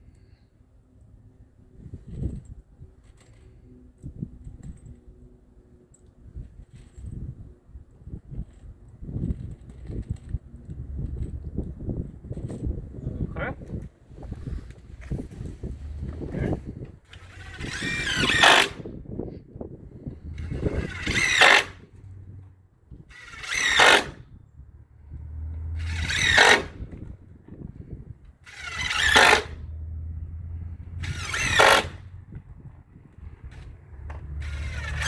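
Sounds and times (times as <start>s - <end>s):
power driver driving screws into wood: 17.1s - 18.9s, 20.3s - 22.0s, 23.1s - 24.3s, 25.6s - 27.2s, 28.4s - 29.8s, 30.8s - 32.2s, 33.6s - 35.0s.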